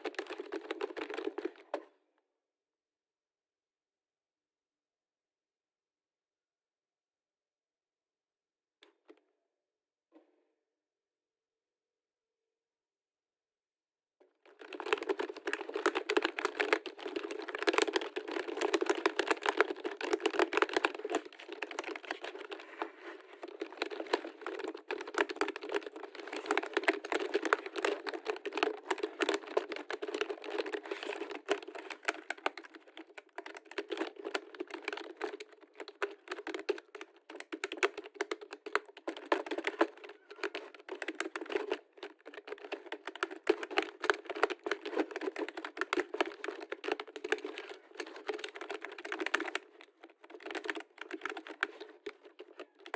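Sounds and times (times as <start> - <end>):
rapid keyboard typing: 0.0 - 1.6, 14.6 - 52.9.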